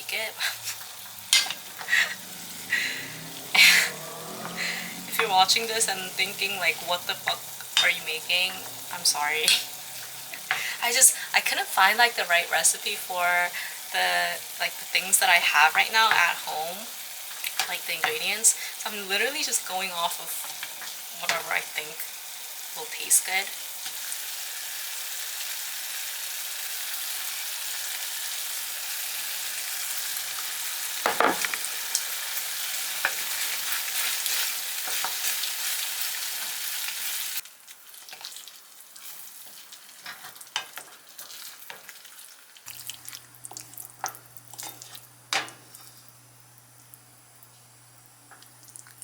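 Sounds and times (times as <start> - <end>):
curry sizzling in a frying pan: 0.0 - 49.0
spoon scraping pan: 0.4 - 2.3, 4.4 - 10.7, 39.0 - 41.9, 43.5 - 46.0.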